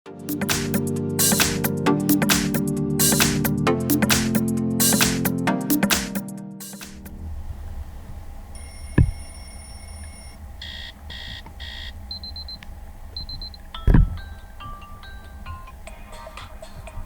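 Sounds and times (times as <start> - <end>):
buzzy beeps: 8.6 - 12.6
electronic beep tone: 8.6 - 12.6
chiming melody: 13.8 - 16.8.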